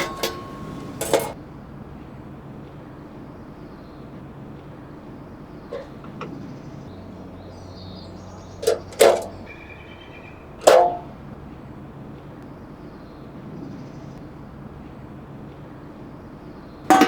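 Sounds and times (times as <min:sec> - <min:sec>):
sharp ringing knocks: 0:00.0 - 0:01.4
steady background hum: 0:00.0 - 0:17.0.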